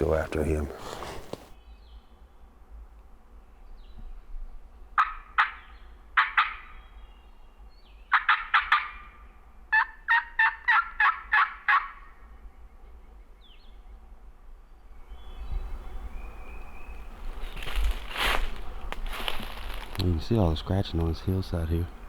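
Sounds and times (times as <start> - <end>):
turkey clucking calls: 5.0 - 5.6, 6.2 - 6.7, 8.1 - 9.1, 9.7 - 12.0
turkey yelps: 5.0 - 5.6, 6.2 - 6.7, 8.1 - 9.1, 9.7 - 12.1.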